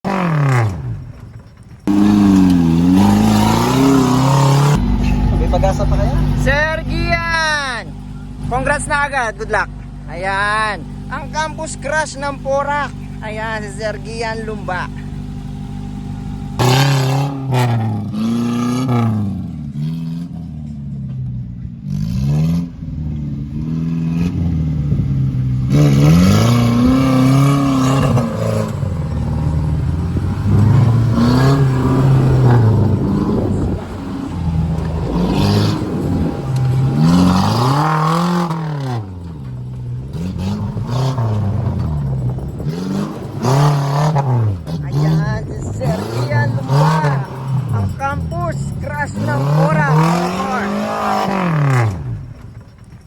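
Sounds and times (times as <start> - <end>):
off-road vehicle engine revving: 0.0 - 53.0.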